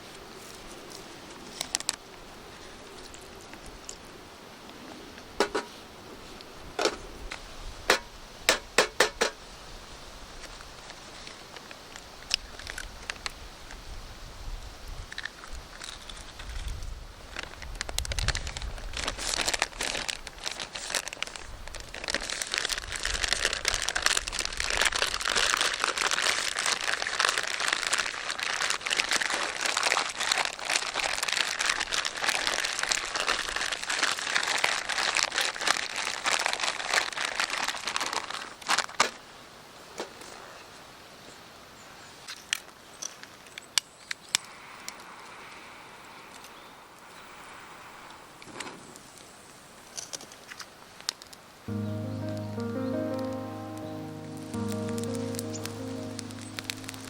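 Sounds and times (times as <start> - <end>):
crinkling and rustling: 15.1 - 39.2, 48.4 - 52.2.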